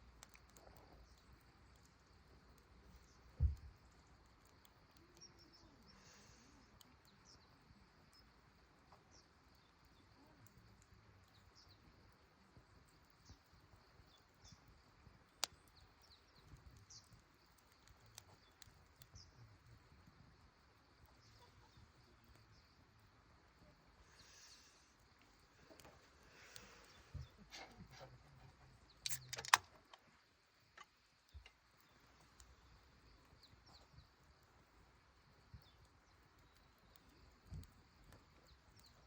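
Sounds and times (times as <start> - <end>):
faint high bird chirps: 4.9 - 6.2, 21.1 - 22.9.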